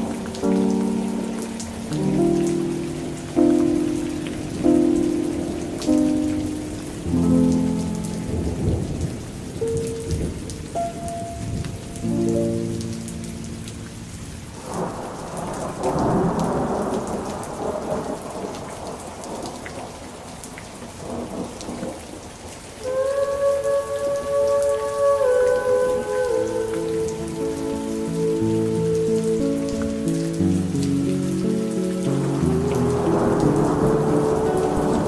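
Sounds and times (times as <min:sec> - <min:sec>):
slow sustained music notes: 0:00.0 - 0:14.2, 0:22.8 - 0:35.0
steady rain: 0:00.0 - 0:35.0
rolling thunder: 0:08.2 - 0:10.7, 0:14.6 - 0:20.3, 0:21.0 - 0:22.2, 0:32.0 - 0:35.0.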